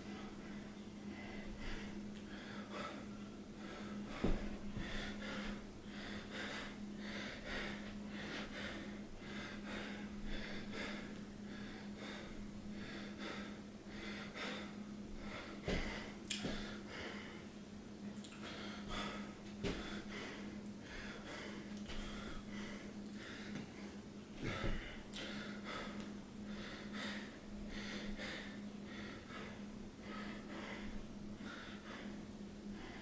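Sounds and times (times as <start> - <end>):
person breathing heavily: 0.0 - 17.6, 18.4 - 33.0
steady low hum: 0.0 - 33.0.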